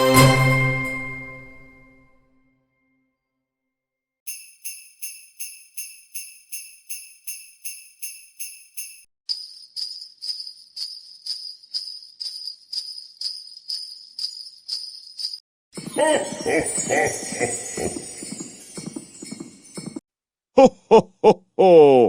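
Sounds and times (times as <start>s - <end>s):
brighter ringing bells: 4.3s - 9.0s, 15.8s - 20.0s
sleigh bells jingling: 4.3s - 20.0s.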